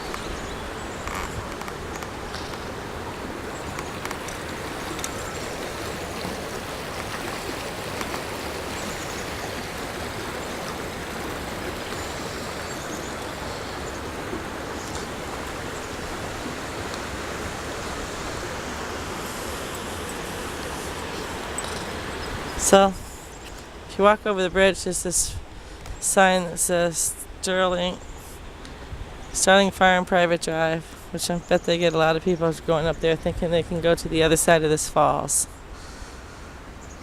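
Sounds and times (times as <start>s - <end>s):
waterfall roaring: 0.0s - 22.8s.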